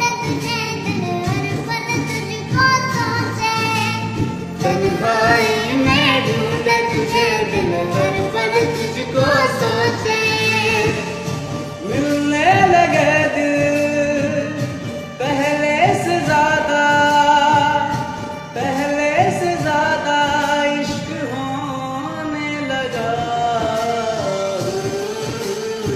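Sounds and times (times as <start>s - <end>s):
instrumental backing: 0.0s - 25.9s
person singing: 0.0s - 25.9s.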